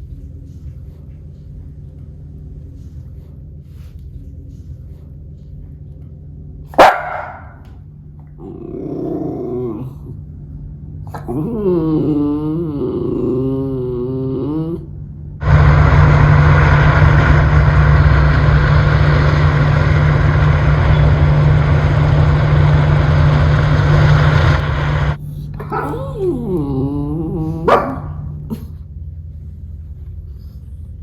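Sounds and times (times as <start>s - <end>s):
loud steady noise with low hum: 0.0s - 31.0s
dog whining: 8.3s - 10.2s, 11.1s - 14.9s, 25.3s - 28.8s.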